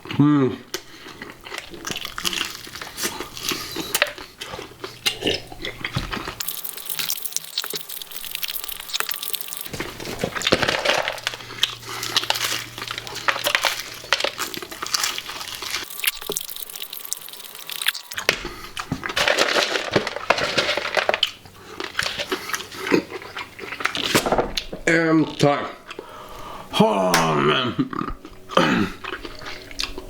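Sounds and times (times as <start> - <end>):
crunching and chewing fried chicken: 0.0 - 24.7, 27.8 - 30.0
handling of containers: 5.9 - 22.7.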